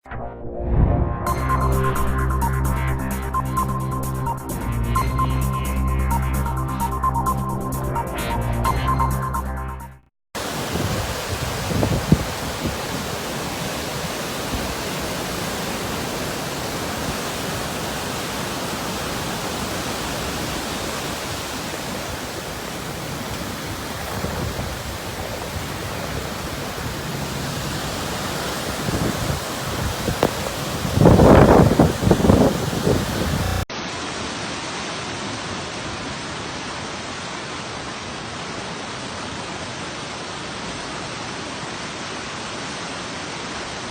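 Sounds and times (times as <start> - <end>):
wind and heavy rain: 10.4 - 43.9.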